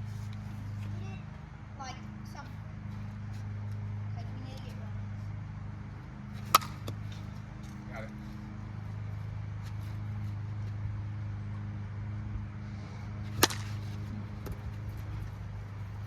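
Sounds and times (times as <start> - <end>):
steady low hum: 0.0 - 16.0
plastic bat hitting ball: 6.4 - 7.1, 13.4 - 14.6.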